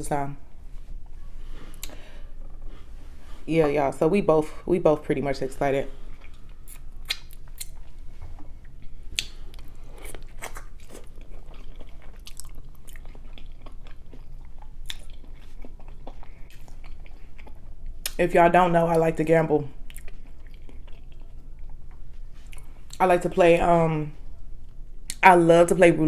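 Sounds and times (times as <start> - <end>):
person chewing food: 0.7 - 3.5, 5.9 - 18.2, 19.6 - 23.0
wet mouth smacks and clicks: 6.2 - 7.8, 9.1 - 10.8.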